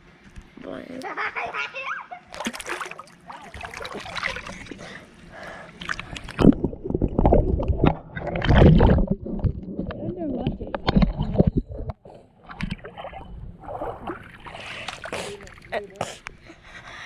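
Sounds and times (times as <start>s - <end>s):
water splashing in a pool: 2.3s - 16.0s
underwater gurgling: 2.4s - 16.0s.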